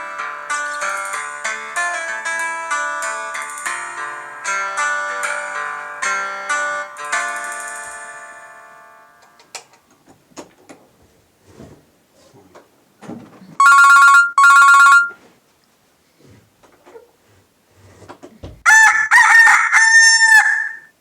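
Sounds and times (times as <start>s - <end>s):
plucked-string ringtone chord: 0.0s - 9.4s, 13.6s - 15.2s
electronic double beep: 13.6s - 15.2s.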